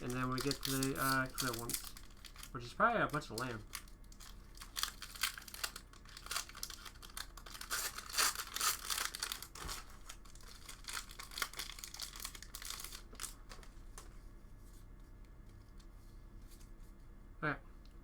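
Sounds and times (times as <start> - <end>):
plastic wrapper tearing and crinkling: 0.0 - 13.7.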